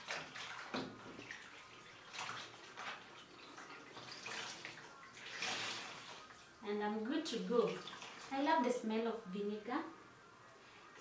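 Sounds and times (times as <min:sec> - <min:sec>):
cloth wrung out in water: 0:00.0 - 0:06.6, 0:07.6 - 0:08.4
water splashes and drips: 0:00.0 - 0:06.6, 0:07.3 - 0:08.5.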